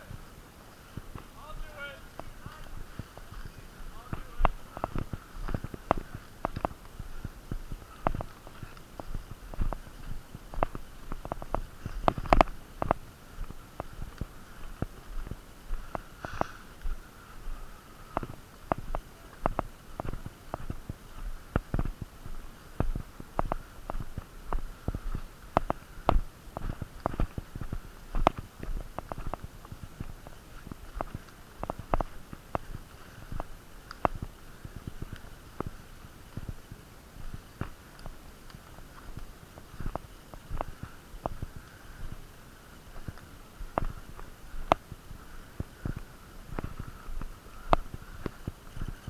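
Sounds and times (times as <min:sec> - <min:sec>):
footsteps: 0:00.0 - 0:49.0.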